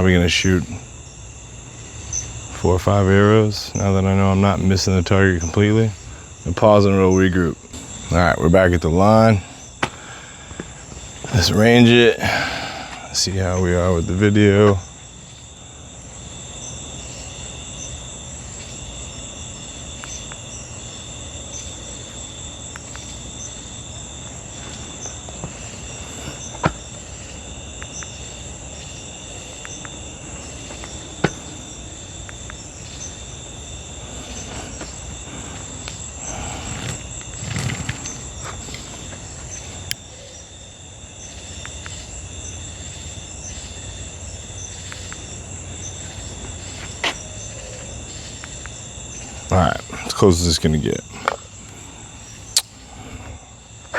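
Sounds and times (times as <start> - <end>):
crickets and insects chirping: 0.0 - 53.9
sharp snaps: 39.8 - 40.2, 52.5 - 53.0.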